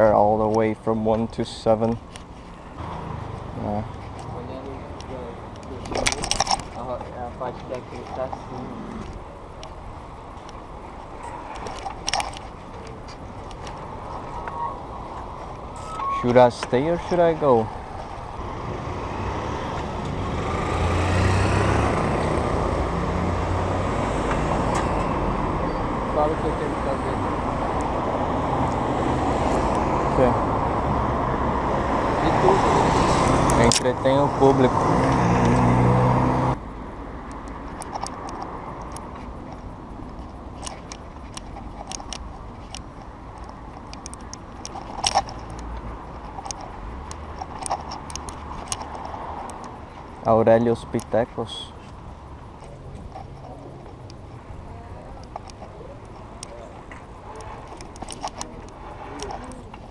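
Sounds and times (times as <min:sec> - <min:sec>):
traffic noise: 0:00.0 - 0:59.9
vehicle engine humming: 0:00.0 - 0:59.9
bicycle rattling metallic clicks: 0:05.5 - 0:06.8, 0:11.5 - 0:13.8, 0:37.2 - 0:51.2, 0:57.3 - 0:59.9.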